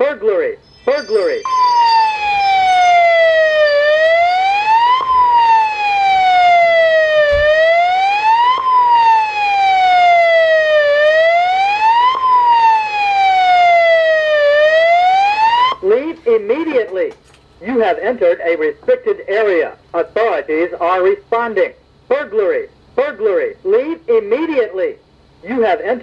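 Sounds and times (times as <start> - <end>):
spoken alarm messages: 0.0 - 12.5, 15.2 - 26.0
electronic siren tone: 0.6 - 15.8.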